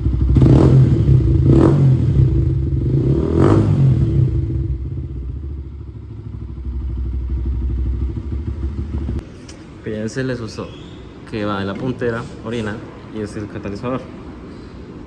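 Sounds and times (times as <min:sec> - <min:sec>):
motorcycle engine idling and revving: 0:00.0 - 0:09.3.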